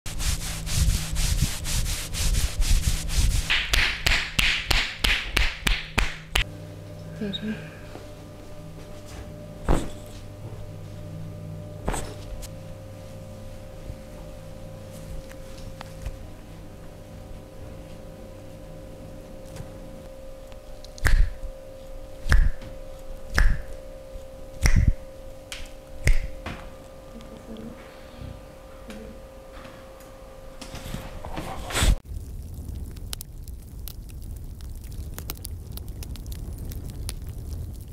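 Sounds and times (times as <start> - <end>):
hands rubbing over body: 0.1 - 4.2
faint hum: 0.1 - 37.9
hands slapping body: 3.5 - 6.5, 22.3 - 22.7, 23.4 - 23.7, 24.6 - 26.4.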